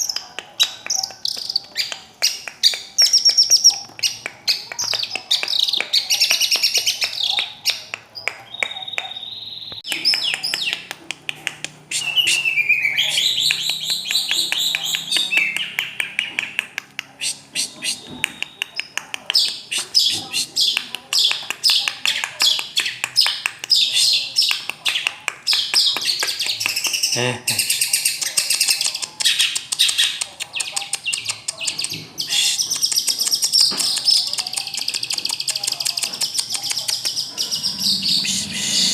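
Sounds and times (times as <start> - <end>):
shrike singing chirps and trills: 26.1 - 38.9.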